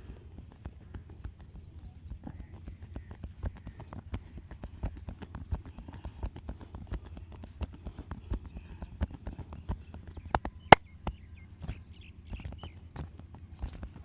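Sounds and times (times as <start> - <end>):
hands slapping and tapping body: 0.3 - 10.8.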